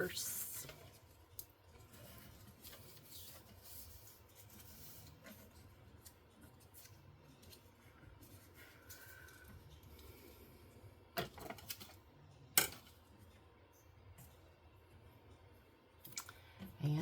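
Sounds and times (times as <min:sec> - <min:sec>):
paper rustling as folded: 0:00.4 - 0:10.0.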